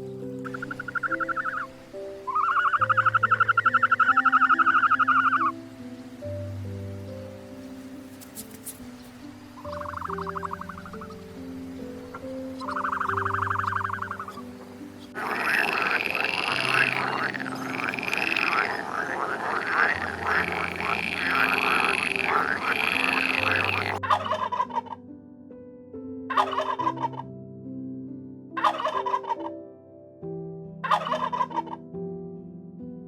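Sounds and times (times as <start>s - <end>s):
background music: 0.0s - 33.0s
flock of birds calling: 0.5s - 5.5s, 7.8s - 24.7s.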